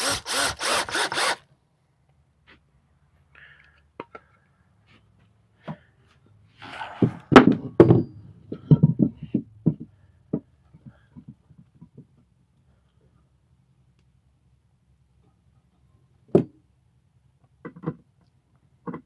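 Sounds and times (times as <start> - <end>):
wooden boards knocking: 6.8 - 9.8.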